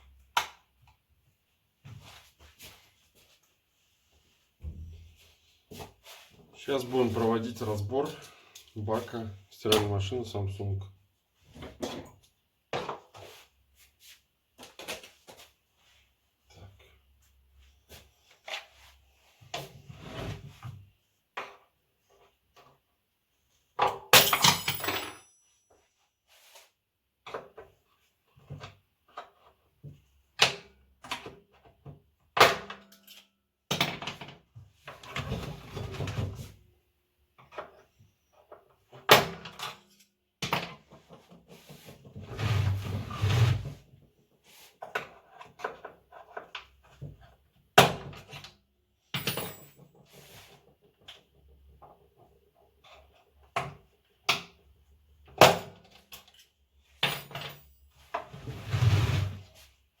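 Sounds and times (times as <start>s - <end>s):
scraping and rubbing: 58.3s - 59.7s.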